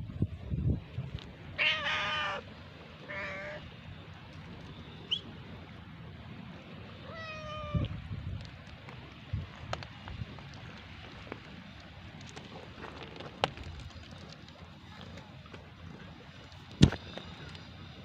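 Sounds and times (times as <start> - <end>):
cat meowing: 1.6 - 2.4, 3.0 - 3.6, 7.0 - 7.9.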